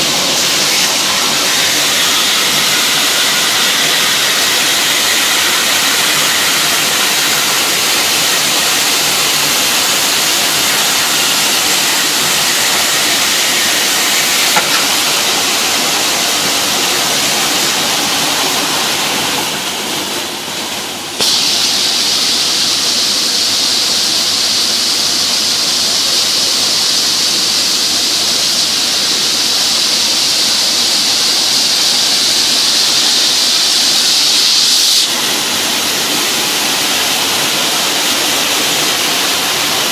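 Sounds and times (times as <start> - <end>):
sanding machine hissing: 0.0 - 19.5.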